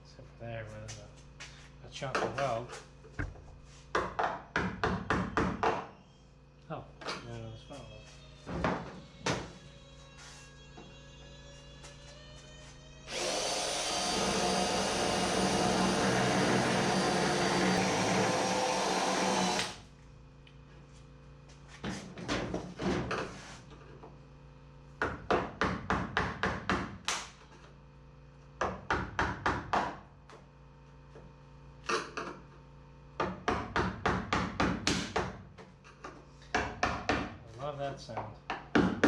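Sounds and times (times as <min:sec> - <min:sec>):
drill cutting sheet metal: 0:13.1 - 0:19.8.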